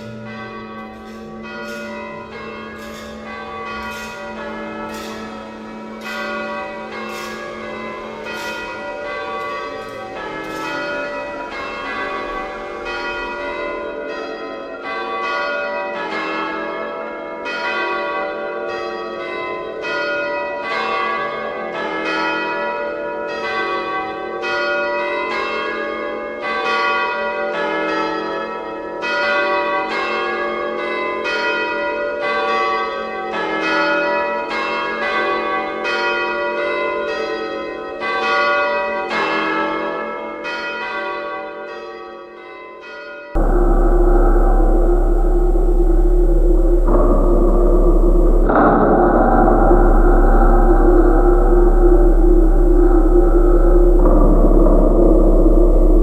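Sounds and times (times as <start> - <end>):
bells pealing: 0.0 - 17.8, 43.4 - 56.0.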